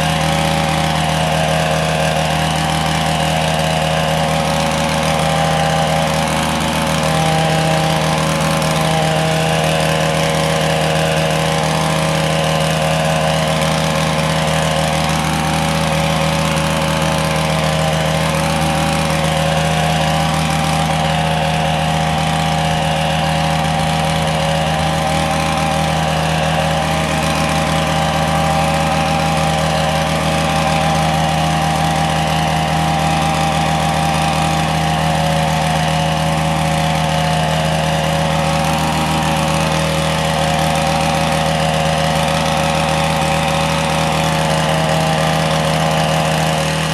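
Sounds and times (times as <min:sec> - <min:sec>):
small petrol engine running: 0:00.0 - 0:46.9.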